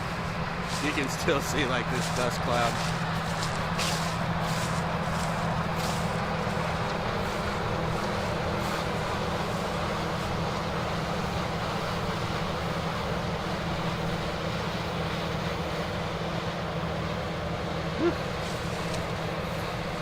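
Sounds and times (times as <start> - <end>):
constant rushing noise: 0.0 - 20.0
engine running steadily: 0.0 - 20.0.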